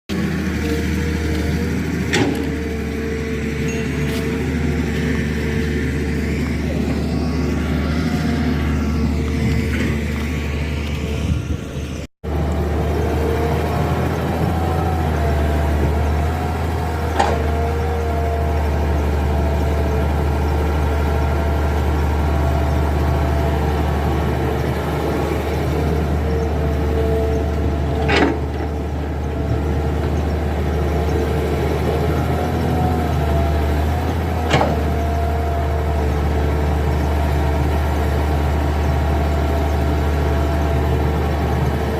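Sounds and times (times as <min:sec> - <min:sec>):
heavy diesel machinery running: 0:00.1 - 0:41.9
wavering whine: 0:03.6 - 0:12.1.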